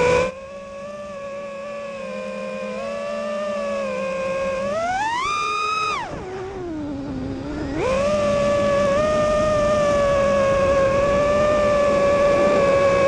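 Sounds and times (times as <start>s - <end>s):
drone motors and props whining: 0.0s - 13.0s.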